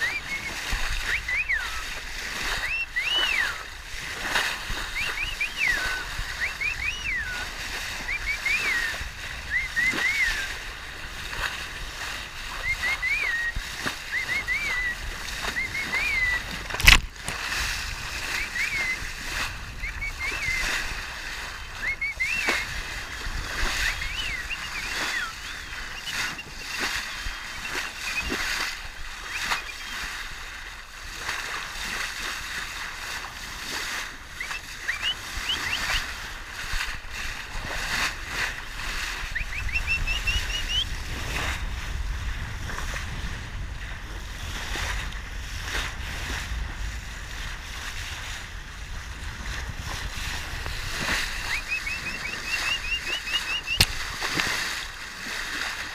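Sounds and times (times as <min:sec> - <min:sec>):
dolphin whistles: 0:00.0 - 0:03.7, 0:04.7 - 0:10.7, 0:12.4 - 0:16.6, 0:18.1 - 0:30.3, 0:33.8 - 0:36.2, 0:38.9 - 0:41.0, 0:51.0 - 0:54.0
water sloshing and splashing: 0:00.0 - 0:43.4, 0:44.0 - 0:55.9
dolphin clicks: 0:51.8 - 0:54.4.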